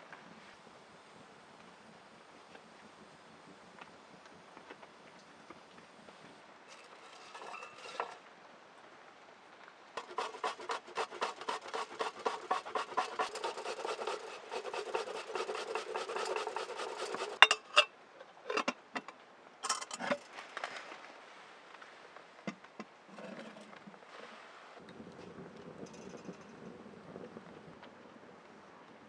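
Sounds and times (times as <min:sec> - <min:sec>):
tool scraping wood: 0:06.7 - 0:08.2, 0:10.0 - 0:17.9.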